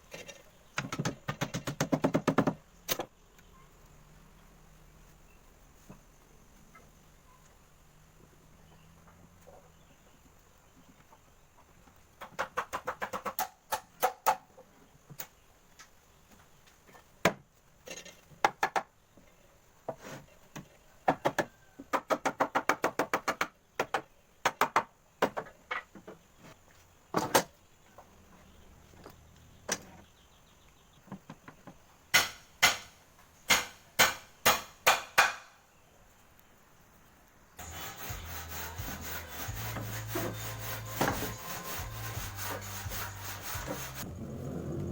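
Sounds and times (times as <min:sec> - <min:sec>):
knocks and clicks from hand work: 0:00.8 - 0:03.1.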